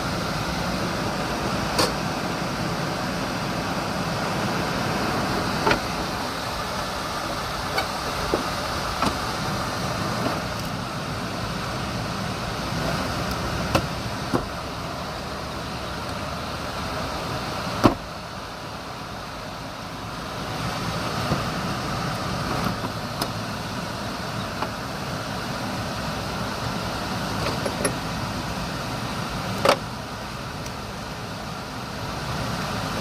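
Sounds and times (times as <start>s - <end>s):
diesel truck engine running: 0.0s - 33.0s.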